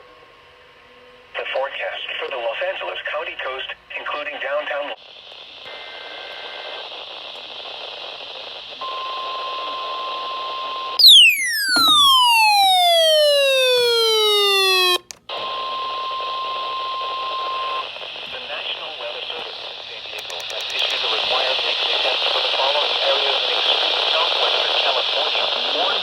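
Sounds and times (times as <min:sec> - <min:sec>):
radio reception hiss: 0:01.3 - 0:10.0, 0:17.8 - 0:26.0
buzzy tone sliding down in pitch: 0:11.0 - 0:15.0
click: 0:14.9 - 0:15.2, 0:20.2 - 0:21.0.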